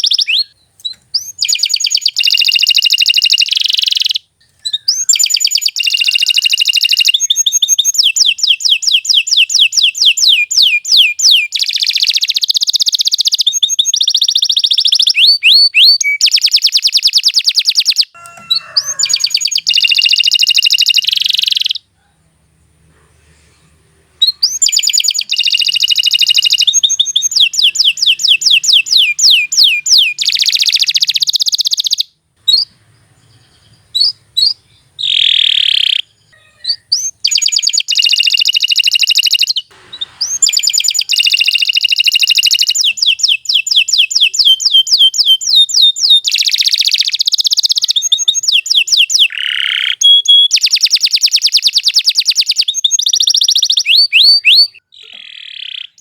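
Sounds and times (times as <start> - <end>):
canary singing trills: 0.0 - 22.1, 24.2 - 56.0.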